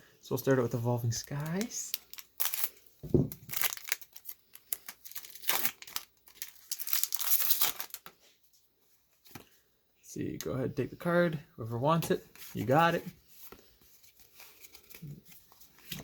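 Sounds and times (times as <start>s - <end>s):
foil wrapper tearing and crinkling: 1.3s - 8.1s
soft thump: 3.0s - 3.4s.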